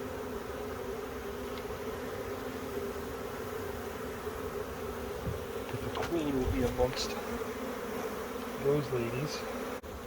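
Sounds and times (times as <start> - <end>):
bee swarm buzzing: 0.0 - 10.0.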